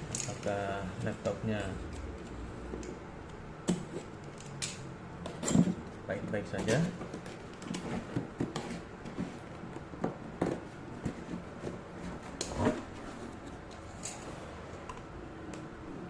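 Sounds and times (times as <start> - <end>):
box and packing being handled: 5.4 - 14.2.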